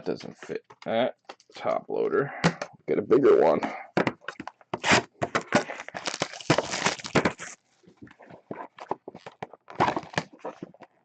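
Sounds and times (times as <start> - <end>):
plastic packaging crinkling: 4.8 - 7.6.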